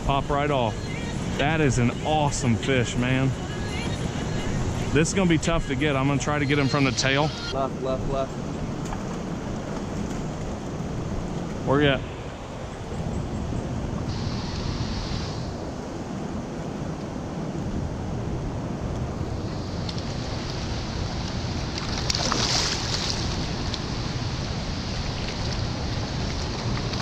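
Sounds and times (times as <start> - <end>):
river current rushing: 0.0 - 27.0
wind buffeting microphone: 7.6 - 27.0.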